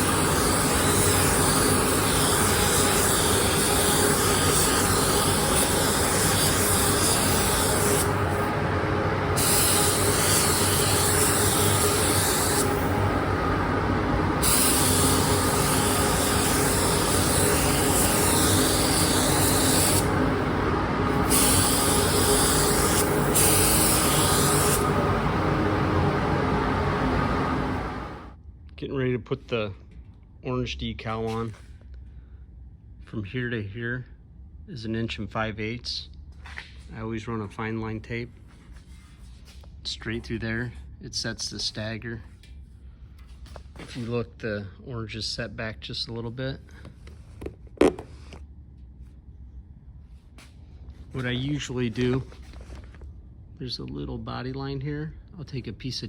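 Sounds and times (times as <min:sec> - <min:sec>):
spray gun hissing: 0:00.0 - 0:08.5, 0:09.3 - 0:13.2, 0:14.3 - 0:28.2
steady low hum: 0:00.0 - 0:56.0.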